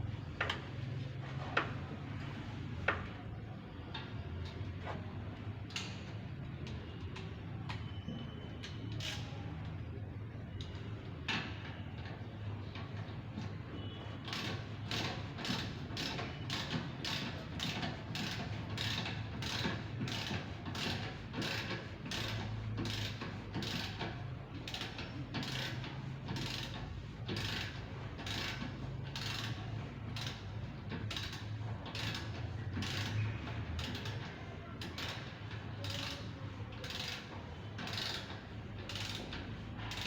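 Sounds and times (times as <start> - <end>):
rhythmic mechanical strokes: 14.2 - 40.0.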